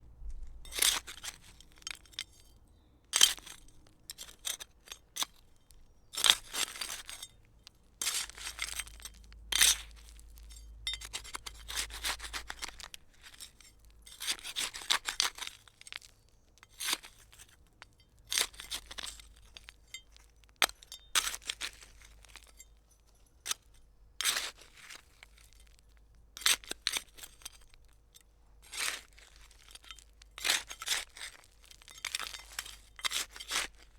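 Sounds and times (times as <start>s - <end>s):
hand trowel scraping soil: 3.2s - 7.3s, 8.0s - 16.1s, 28.6s - 33.9s.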